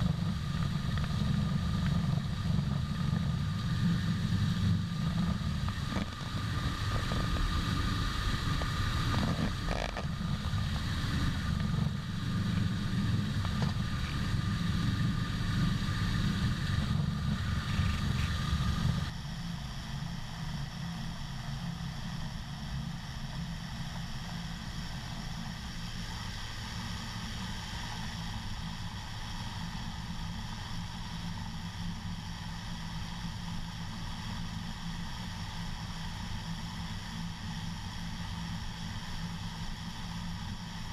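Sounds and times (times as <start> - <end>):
harvesting machinery engine: 0.0 - 19.1
machine whine: 0.0 - 40.9
quiet machine hum: 0.0 - 40.9.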